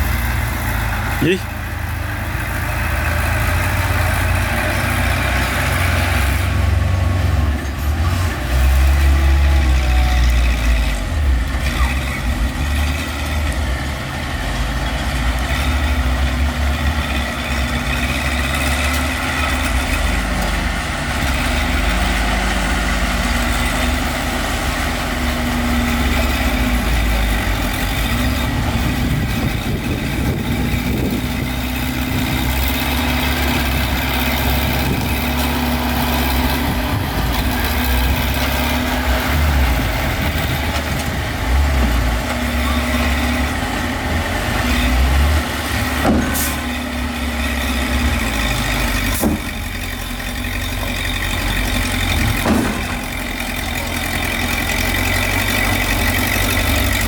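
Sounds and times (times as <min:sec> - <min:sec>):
heavy diesel engines running: 0:00.0 - 0:57.0.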